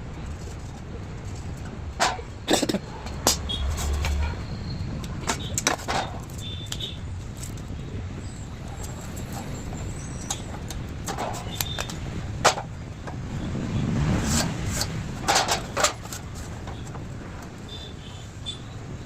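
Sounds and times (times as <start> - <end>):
sharp knocks and clatters: 1.4 - 4.2, 5.2 - 6.4, 10.3 - 13.3, 14.3 - 17.5.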